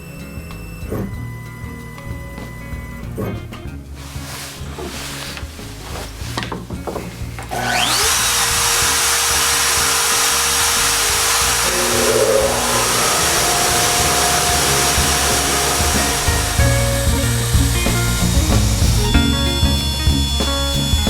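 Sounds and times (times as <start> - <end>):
background music: 0.0 - 21.0
end mill cutting wood: 6.3 - 21.0
router spindle whine: 7.5 - 21.0.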